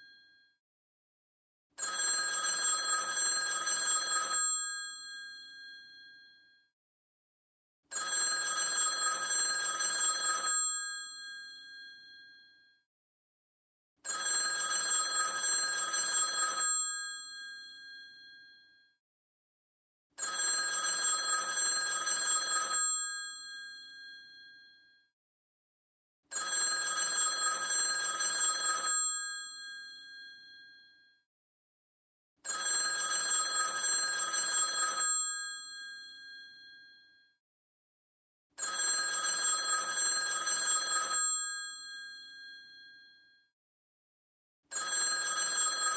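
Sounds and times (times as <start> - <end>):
telephone bells ringing: 1.8 - 4.7, 7.9 - 10.8, 14.1 - 17.4, 20.2 - 24.1, 26.3 - 29.6, 32.5 - 36.7, 38.6 - 42.5, 44.7 - 45.9.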